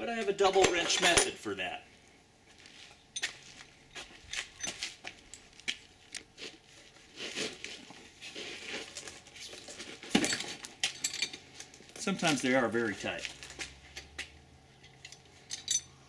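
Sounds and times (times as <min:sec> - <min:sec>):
metal wrenches clinking: 0:00.6 - 0:01.4, 0:04.3 - 0:05.5, 0:09.0 - 0:12.6, 0:14.8 - 0:16.0.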